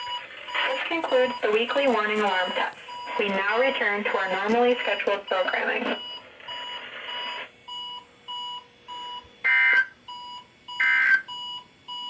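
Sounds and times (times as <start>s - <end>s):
loud multi-tone beep: 0.0s - 1.6s, 4.9s - 12.0s.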